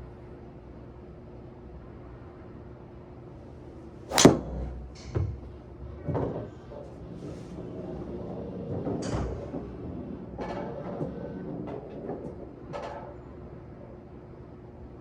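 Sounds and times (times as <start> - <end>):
golf driver striking ball: 4.1 - 4.7.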